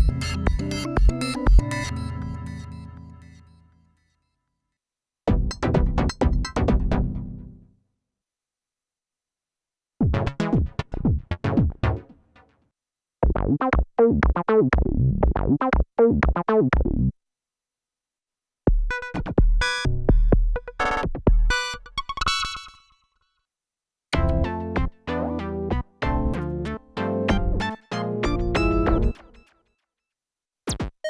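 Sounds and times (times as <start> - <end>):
heavy drum-like synth hits: 0.0 - 1.9
plucked synth notes: 0.0 - 3.6, 26.1 - 29.2.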